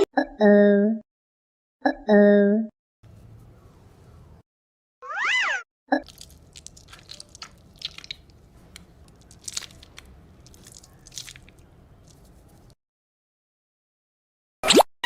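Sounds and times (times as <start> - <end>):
sand being squished and crunched: 6.0 - 12.8.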